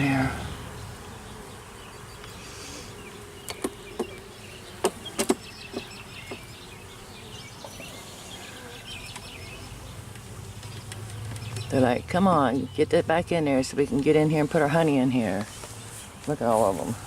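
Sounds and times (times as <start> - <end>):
honeybees buzzing: 0.0 - 17.0
sharp clicks and knocks: 3.5 - 4.2, 4.8 - 6.4.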